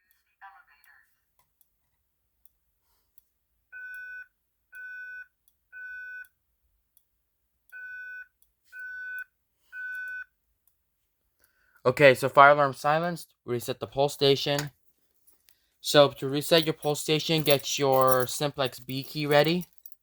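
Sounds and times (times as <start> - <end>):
fire alarm beeps: 3.7 - 6.4, 7.7 - 10.3.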